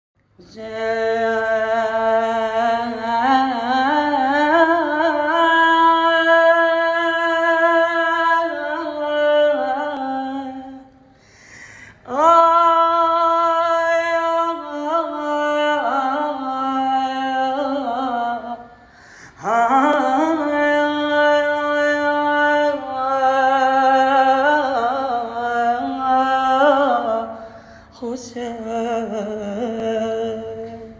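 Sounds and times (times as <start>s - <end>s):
man singing unaccompanied: 28.0s - 30.9s.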